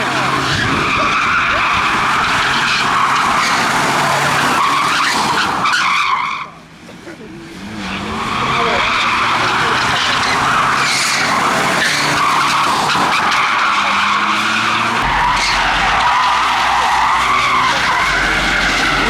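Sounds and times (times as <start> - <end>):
engine revving hard: 0.0 - 5.6, 7.4 - 19.0
car tyres squealing: 0.0 - 19.0
low rumble: 15.0 - 19.0.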